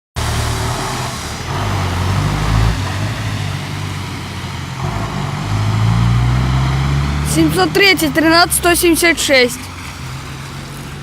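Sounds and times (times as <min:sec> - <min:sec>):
bus engine humming: 0:00.2 - 0:11.0
road and cabin noise: 0:00.2 - 0:11.0.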